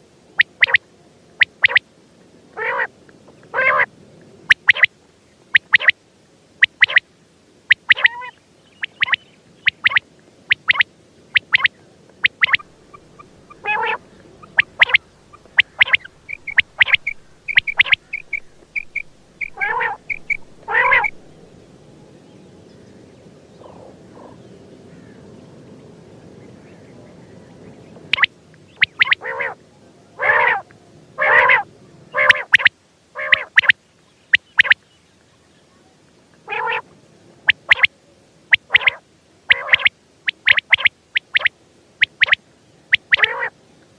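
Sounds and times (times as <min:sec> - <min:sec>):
faint low hum: 0:00.0 - 0:43.9
quail calling: 0:00.4 - 0:00.8, 0:01.4 - 0:01.8, 0:02.6 - 0:02.9, 0:03.5 - 0:03.9, 0:04.5 - 0:04.9, 0:05.5 - 0:06.0, 0:06.6 - 0:07.0, 0:07.7 - 0:21.4, 0:23.6 - 0:25.2, 0:28.1 - 0:29.6, 0:30.2 - 0:30.6, 0:31.2 - 0:34.8, 0:36.5 - 0:36.8, 0:37.5 - 0:37.9, 0:38.5 - 0:43.5.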